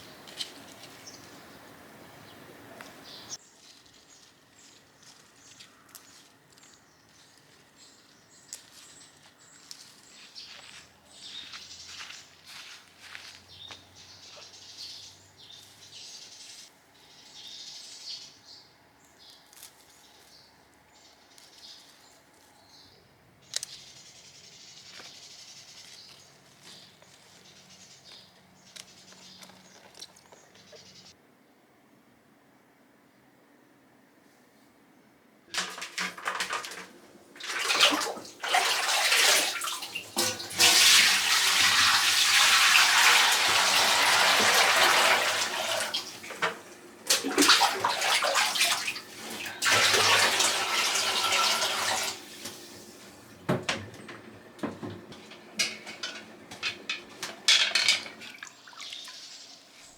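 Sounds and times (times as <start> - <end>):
birds chirping: 0.0 - 31.2, 52.3 - 59.9.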